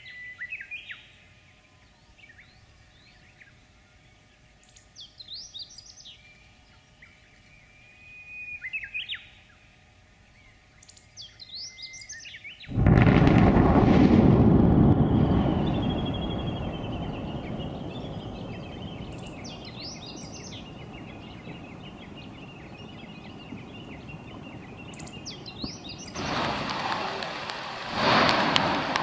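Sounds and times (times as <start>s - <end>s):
birds chirping: 0.0s - 29.0s
volcanic eruption boom and rumble: 12.7s - 29.0s.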